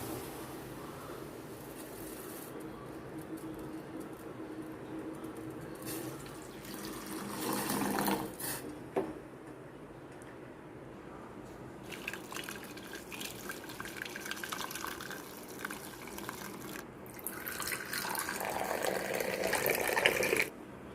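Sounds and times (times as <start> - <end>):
tea pouring into a cup: 6.0 - 8.4, 11.8 - 20.5.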